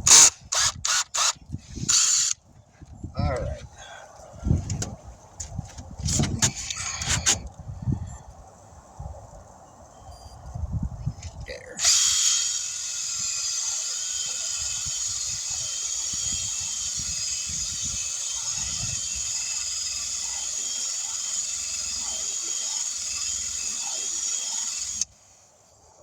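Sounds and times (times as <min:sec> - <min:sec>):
power drill whining: 0:00.0 - 0:02.4, 0:06.1 - 0:07.4, 0:11.8 - 0:25.2.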